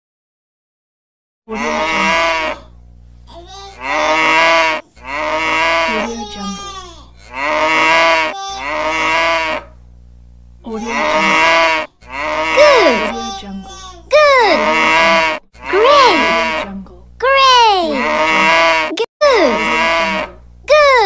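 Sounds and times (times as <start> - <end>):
cow mooing: 1.5 - 2.7, 3.8 - 6.2, 7.2 - 9.8, 10.8 - 13.1, 14.4 - 16.7, 17.9 - 20.4.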